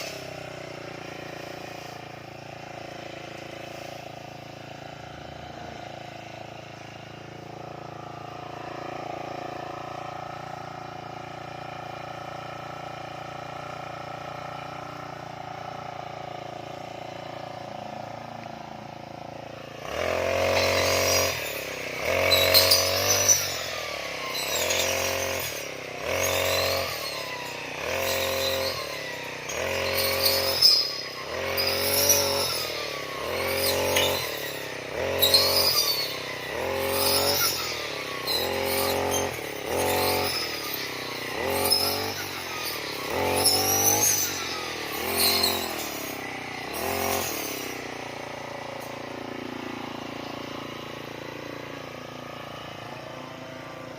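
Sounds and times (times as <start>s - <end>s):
brush cutter engine revving: 0.0s - 53.9s.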